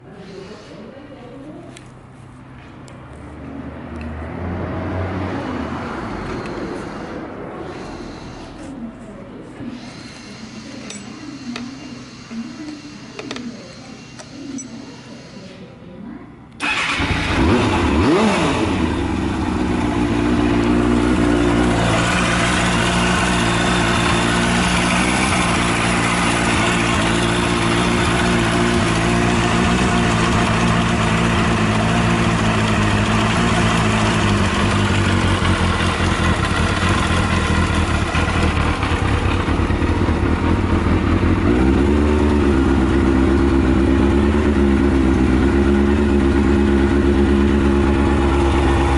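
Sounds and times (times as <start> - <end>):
motorcycle engine revving and idling: 16.6 - 48.9.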